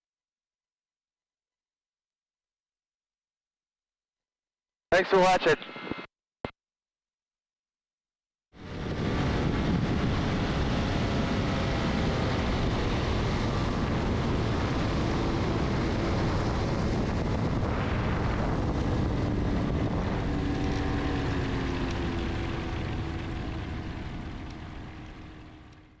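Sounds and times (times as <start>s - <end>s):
aircraft engine and propeller: 8.6s - 26.0s.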